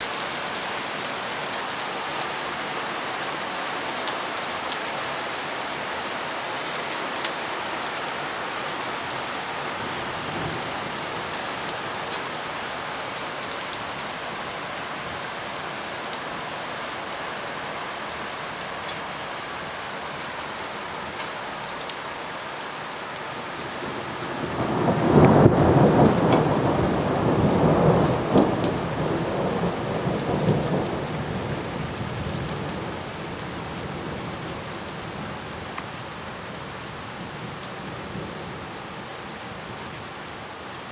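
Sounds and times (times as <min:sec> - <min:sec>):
steady rain: 0:00.0 - 0:40.9
thunder rumbling: 0:23.9 - 0:33.0.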